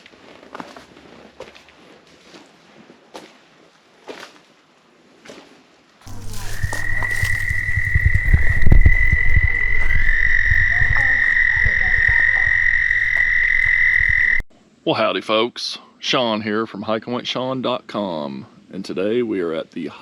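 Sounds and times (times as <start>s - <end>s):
frogs trilling: 6.1s - 14.4s
wind rumble on microphone: 6.1s - 14.4s.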